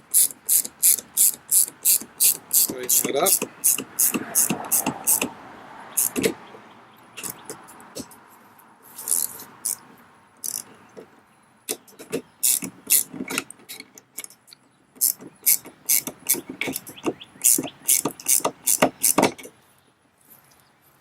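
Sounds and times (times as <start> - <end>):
ratchet wrench clicking: 0.1 - 5.3, 6.0 - 6.3, 9.0 - 9.8, 10.4 - 10.7, 12.4 - 14.4, 15.0 - 19.5.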